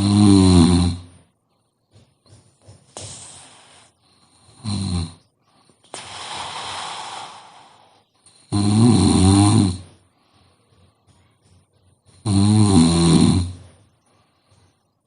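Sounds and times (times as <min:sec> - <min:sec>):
woman snoring: 0:00.0 - 0:01.2, 0:03.5 - 0:05.2, 0:06.0 - 0:09.9, 0:12.2 - 0:13.7
long airy breath: 0:05.7 - 0:08.1.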